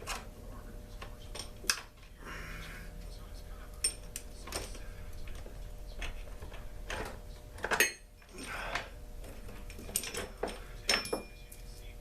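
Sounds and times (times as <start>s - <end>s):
metal tools clinking and clattering: 3.8s - 11.6s.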